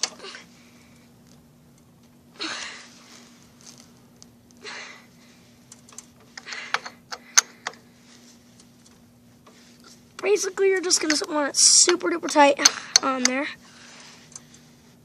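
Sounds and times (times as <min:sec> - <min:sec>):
hand tools scraping metal: 0:09.7 - 0:13.0
sharp metallic clicks: 0:10.9 - 0:13.4.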